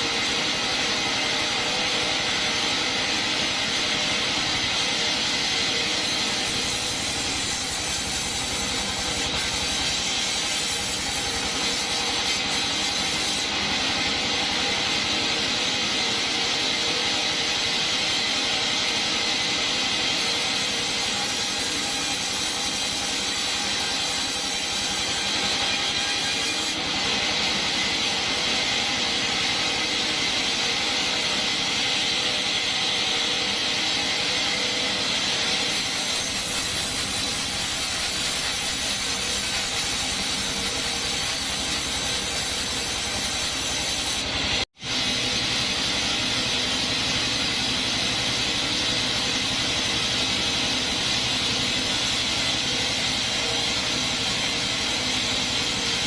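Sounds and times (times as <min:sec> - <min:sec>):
bandsaw cutting wood: 0:04.6 - 0:13.6, 0:20.0 - 0:29.4, 0:35.2 - 0:45.9.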